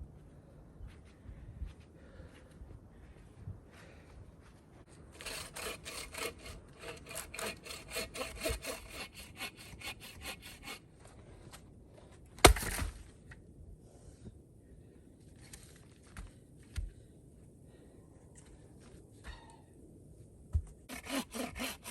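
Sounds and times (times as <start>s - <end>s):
hand saw cutting wood: 5.0s - 10.8s, 20.9s - 21.9s
sharp crack of wood: 12.4s - 13.1s.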